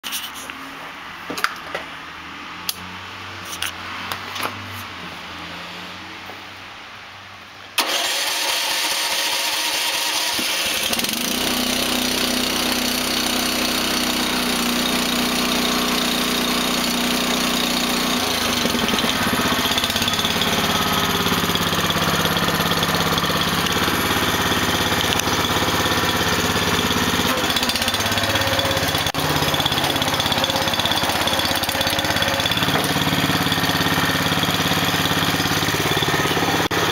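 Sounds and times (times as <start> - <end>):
small gasoline engine running: 7.8 - 36.9.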